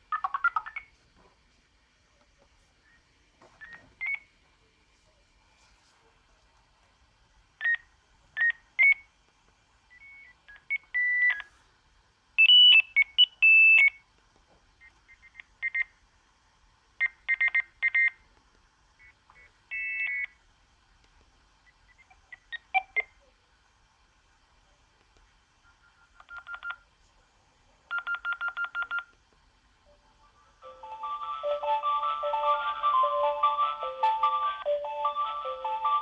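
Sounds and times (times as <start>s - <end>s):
mobile phone ringtone beeps: 30.6s - 36.0s.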